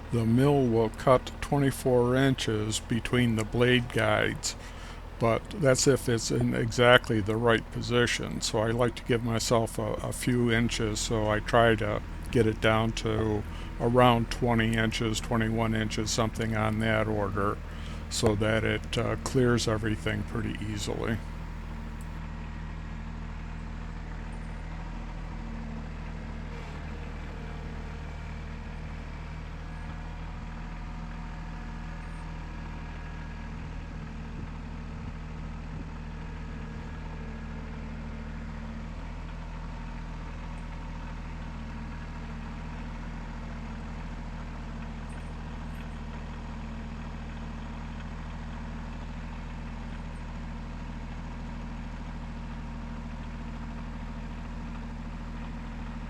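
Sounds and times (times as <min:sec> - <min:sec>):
sawmill engine idling: 0:00.0 - 0:22.1.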